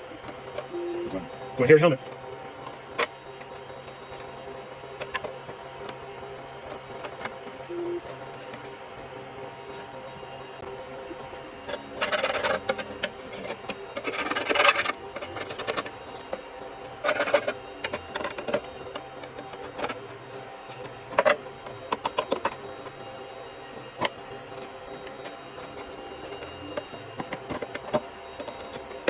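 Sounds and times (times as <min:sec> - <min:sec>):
steady hum: 0:00.0 - 0:29.0
plastic crackling and scraping: 0:11.7 - 0:23.0.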